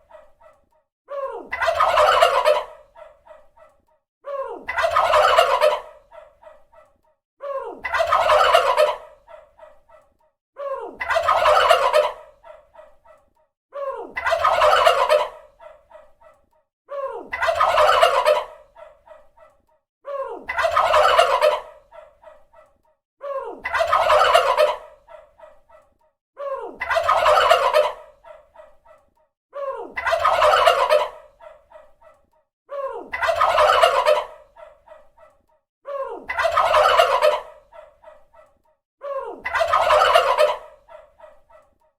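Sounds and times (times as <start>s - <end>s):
turkey gobbling: 1.5s - 3.4s, 4.7s - 6.6s, 7.8s - 9.8s, 11.0s - 12.9s, 14.2s - 16.0s, 17.3s - 19.2s, 20.5s - 22.1s, 23.6s - 25.3s, 26.8s - 28.5s, 30.0s - 31.7s, 33.1s - 35.0s, 36.3s - 38.0s, 39.4s - 41.4s.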